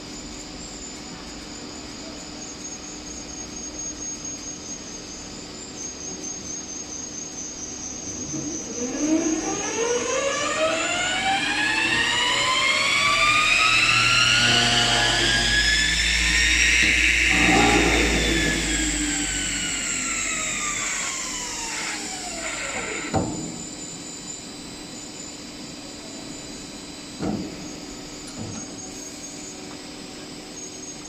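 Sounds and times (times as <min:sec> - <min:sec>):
electric motor spinning up: 0:08.3 - 0:23.2
low rumble: 0:14.0 - 0:20.4.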